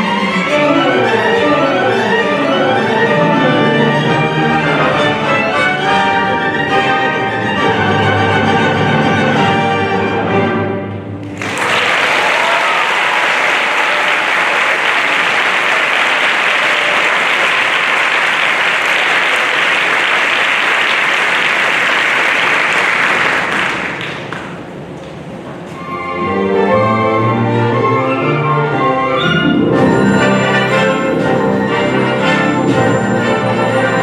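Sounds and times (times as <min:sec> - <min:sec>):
symphony orchestra playing: 0:00.0 - 0:11.6, 0:25.8 - 0:34.0
audience applause: 0:11.2 - 0:24.7.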